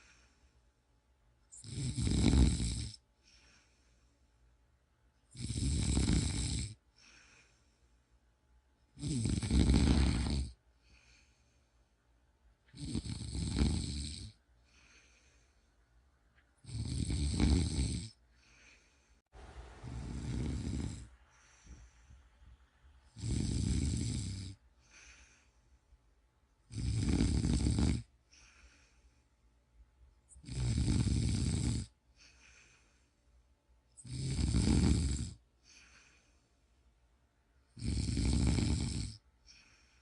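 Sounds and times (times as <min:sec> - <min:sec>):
soft breathing: 0:00.0 - 0:01.0, 0:03.0 - 0:04.6, 0:06.8 - 0:08.4, 0:09.8 - 0:12.2, 0:14.4 - 0:16.6, 0:18.1 - 0:23.2, 0:24.2 - 0:26.2, 0:28.0 - 0:29.6, 0:31.9 - 0:33.6, 0:35.4 - 0:37.0, 0:39.2 - 0:40.0
person snoring: 0:01.5 - 0:03.7, 0:05.3 - 0:07.5, 0:09.0 - 0:11.4, 0:12.7 - 0:15.4, 0:16.6 - 0:18.9, 0:19.8 - 0:21.9, 0:23.0 - 0:25.5, 0:26.7 - 0:29.0, 0:30.3 - 0:32.8, 0:34.0 - 0:36.2, 0:37.8 - 0:39.9.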